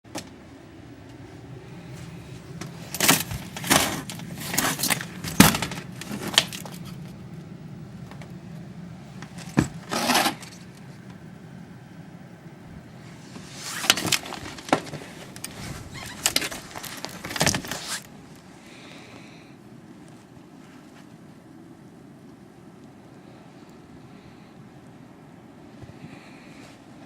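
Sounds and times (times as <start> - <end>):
door scraping against snow: 9.4 - 10.6, 13.4 - 18.1.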